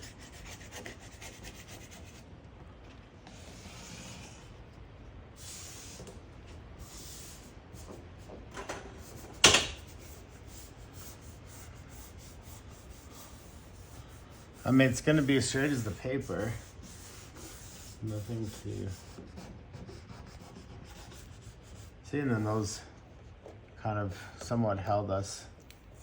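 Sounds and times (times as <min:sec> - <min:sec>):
decal rubbing strokes: 0:06.8 - 0:22.8.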